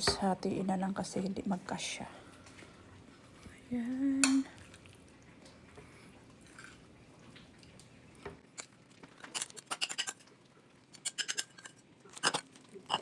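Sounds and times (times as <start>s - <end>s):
utensils clicking and tapping: 11.0s - 13.0s.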